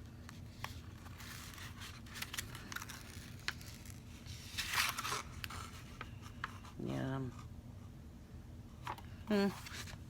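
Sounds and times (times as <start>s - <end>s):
packaging rustling and crinkling: 0.3s - 6.5s.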